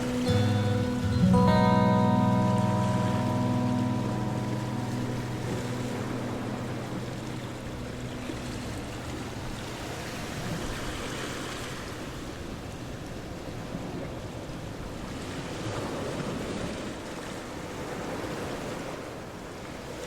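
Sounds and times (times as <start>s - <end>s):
background music with held notes: 0.0s - 11.0s.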